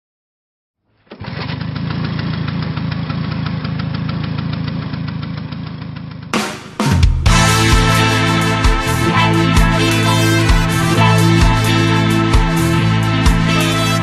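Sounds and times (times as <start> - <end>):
two-stroke engine running: 1.1 - 6.6.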